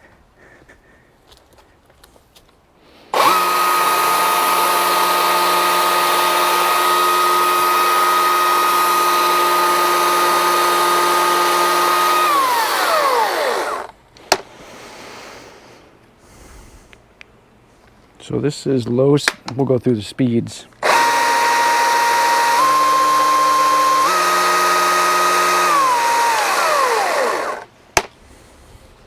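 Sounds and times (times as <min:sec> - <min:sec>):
electric chainsaw whining: 0:03.1 - 0:13.9, 0:20.8 - 0:27.7.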